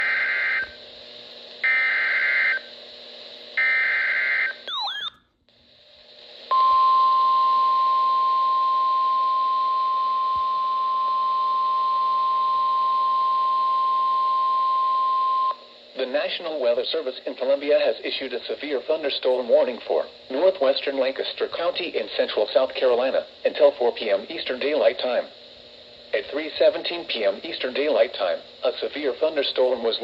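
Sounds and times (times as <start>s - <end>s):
steady warning alarm tone: 0.0s - 0.8s, 1.6s - 2.7s, 3.6s - 5.2s.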